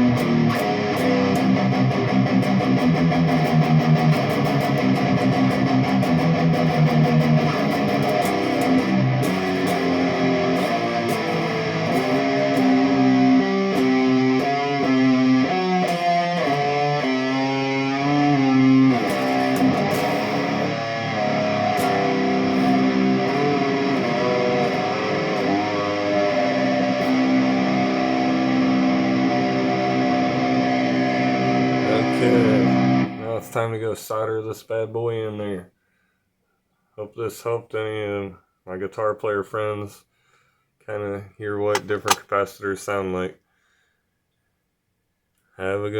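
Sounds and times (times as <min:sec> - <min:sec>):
electric guitar playing: 0:00.0 - 0:33.5.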